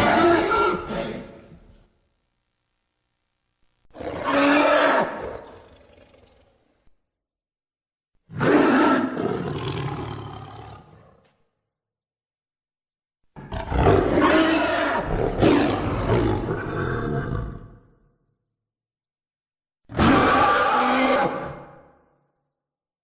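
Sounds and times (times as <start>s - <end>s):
dinosaur roar: 3.9s - 6.6s, 8.3s - 11.2s, 13.4s - 17.9s, 19.9s - 21.8s.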